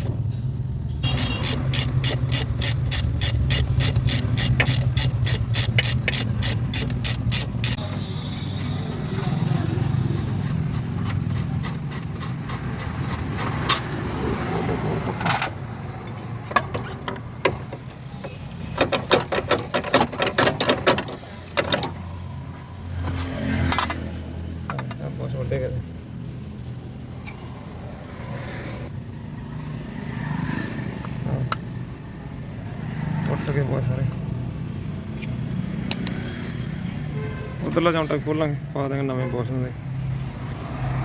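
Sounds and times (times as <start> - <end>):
ratchet wrench clicking: 1.0 - 7.8
metal tools clinking: 15.2 - 18.0.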